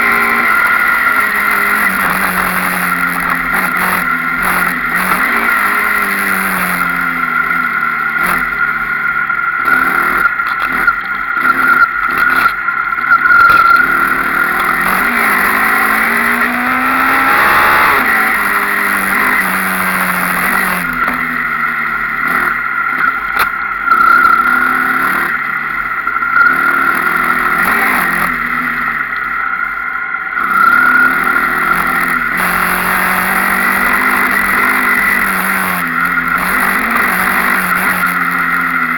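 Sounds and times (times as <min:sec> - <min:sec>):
dirt bike engine revving: 0:00.0 - 0:38.9.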